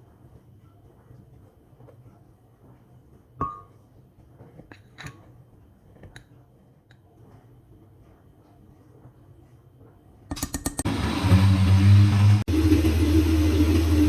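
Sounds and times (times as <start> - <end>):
kitchenware clinking: 3.4 - 3.8, 4.6 - 5.4.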